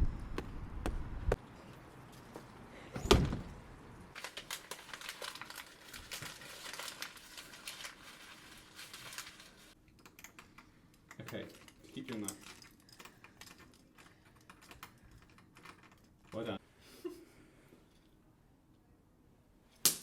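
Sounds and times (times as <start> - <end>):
crinkling and crackling: 4.1 - 16.6.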